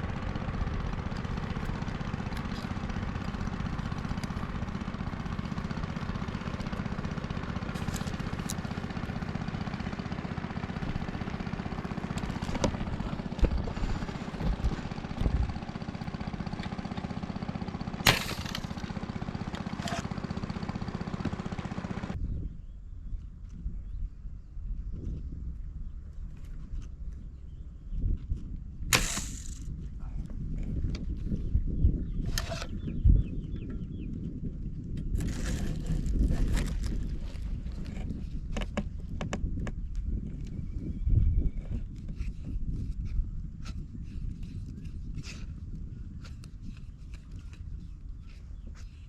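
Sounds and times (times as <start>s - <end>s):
small engine running: 0.0s - 22.2s, 28.9s - 29.7s, 35.0s - 40.9s
sharp click: 28.9s - 29.7s.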